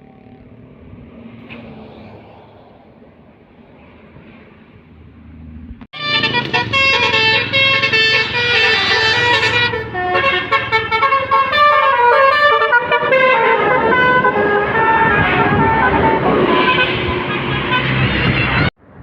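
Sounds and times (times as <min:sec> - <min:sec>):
bus engine and road noise: 0:00.0 - 0:19.0
multi-tone air horn melody: 0:05.9 - 0:18.7.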